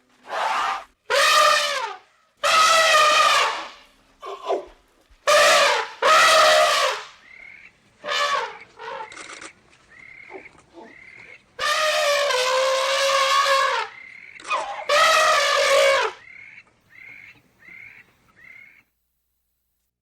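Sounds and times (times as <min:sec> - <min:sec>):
elephant trumpeting: 0:00.2 - 0:04.7, 0:05.3 - 0:07.2, 0:08.0 - 0:09.4, 0:10.2 - 0:16.3.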